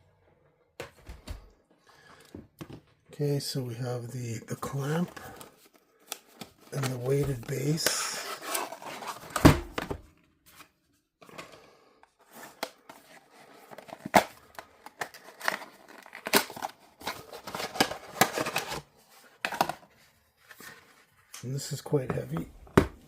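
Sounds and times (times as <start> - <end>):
plastic packaging tearing and crinkling: 13.2 - 18.9.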